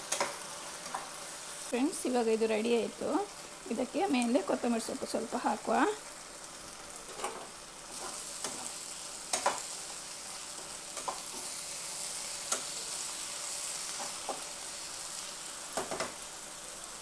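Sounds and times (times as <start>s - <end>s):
prawns sizzling in a pan: 0.0s - 17.0s
spatula scraping a pan: 7.1s - 9.8s.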